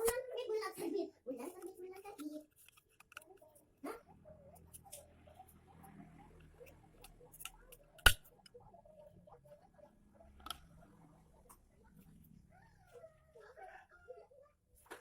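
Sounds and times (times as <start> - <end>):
objects clicking and tapping: 7.0 - 8.6.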